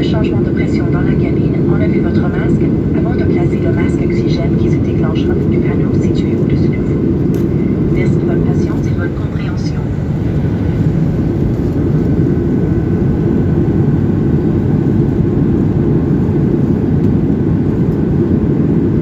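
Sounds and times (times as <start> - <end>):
faint steady whine: 0.0 - 19.0
jet engine cabin rumble: 0.0 - 19.0.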